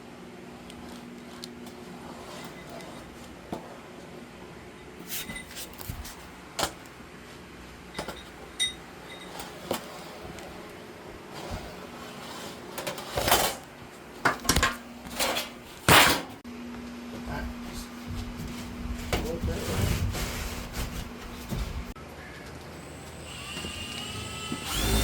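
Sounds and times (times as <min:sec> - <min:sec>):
metal tools clinking: 0:07.9 - 0:09.5.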